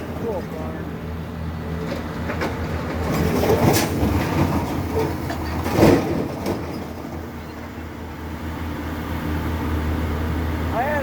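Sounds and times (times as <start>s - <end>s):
farm machinery engine drone: 0.0s - 11.0s.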